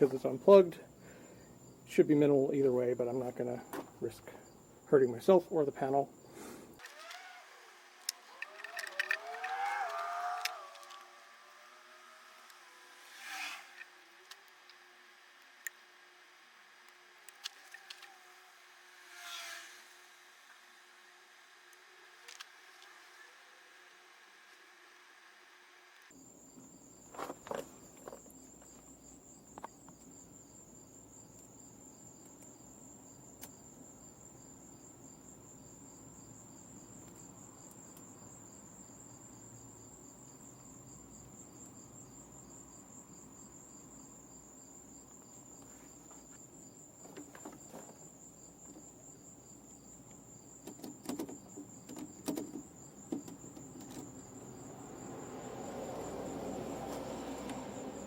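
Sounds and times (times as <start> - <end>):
insects trilling: 0.0 - 24.2, 26.1 - 58.0
handling clicks and knocks: 50.6 - 54.2.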